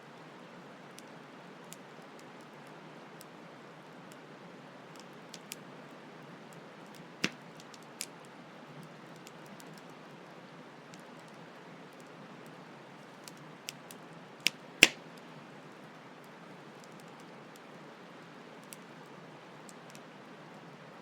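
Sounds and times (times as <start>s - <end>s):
campfire crackling and popping: 5.0s - 5.6s, 6.9s - 9.9s, 13.2s - 15.2s.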